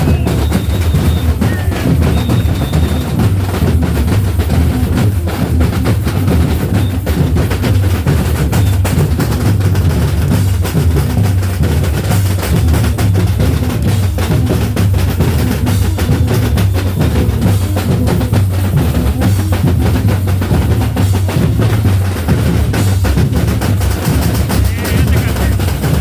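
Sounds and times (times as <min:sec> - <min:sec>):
snare drum strokes: 0:00.0 - 0:03.9
deep bass drums: 0:00.0 - 0:26.0
samba drum group playing: 0:00.0 - 0:26.0.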